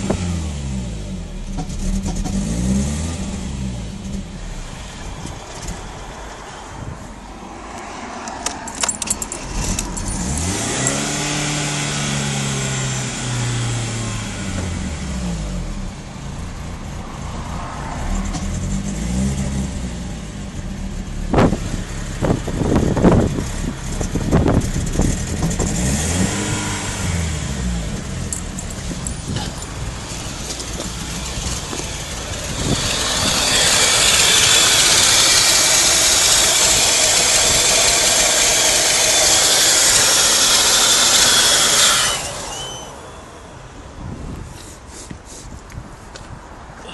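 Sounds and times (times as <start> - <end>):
car engine revving: 0.0 - 6.4, 8.3 - 43.2
sharp clinks and knocks: 8.3 - 11.0, 28.2 - 29.8.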